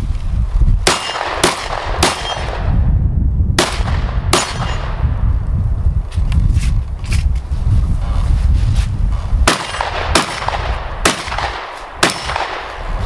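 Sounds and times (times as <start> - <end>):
shotgun shots: 0.8 - 2.7, 3.6 - 5.0, 9.4 - 12.8.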